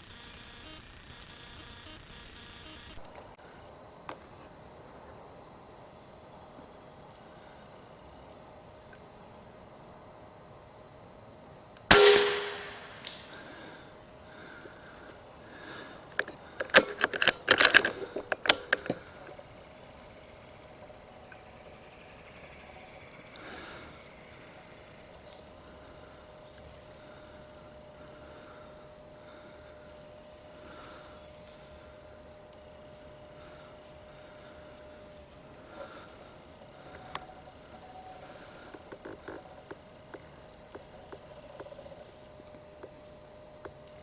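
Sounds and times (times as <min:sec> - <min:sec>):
insects chirring: 0:02.9 - 0:44.0
air rifle shot: 0:11.9 - 0:13.7
sharp clicks and knocks: 0:16.1 - 0:19.4.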